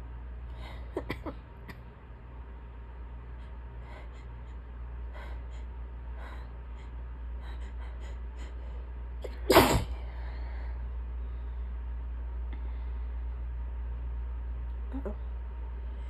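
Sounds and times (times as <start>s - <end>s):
woman sneezing: 9.3s - 10.0s.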